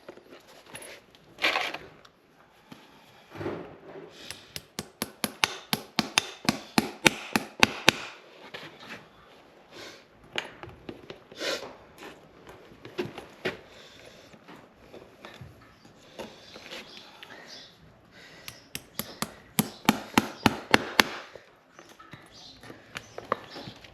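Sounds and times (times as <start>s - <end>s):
hammer striking sharp knocks: 4.3s - 8.2s, 18.5s - 21.3s.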